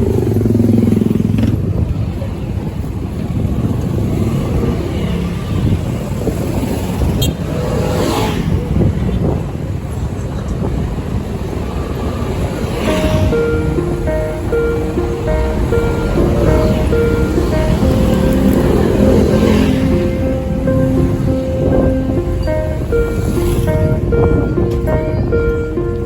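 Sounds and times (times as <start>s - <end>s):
motor vehicles passing: 12.8s - 26.0s
droning engine: 12.9s - 26.0s.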